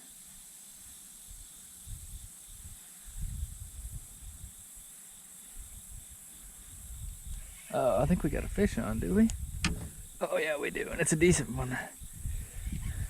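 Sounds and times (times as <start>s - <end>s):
insect chorus hissing: 0.0s - 13.0s
soft low thumps: 8.8s - 10.2s.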